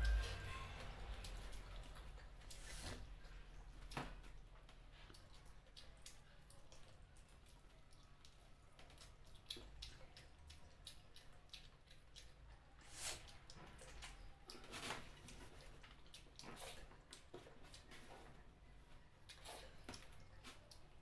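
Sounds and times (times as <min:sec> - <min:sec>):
wet chewing and sucking: 0:00.0 - 0:21.0
small wet clicks: 0:00.8 - 0:21.0.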